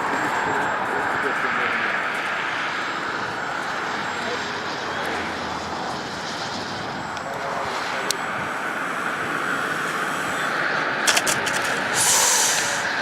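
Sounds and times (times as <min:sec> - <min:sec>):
model airplane motor drone: 0:00.0 - 0:13.0
sharp clicks: 0:11.1 - 0:11.9
short burst of hiss: 0:11.9 - 0:12.8.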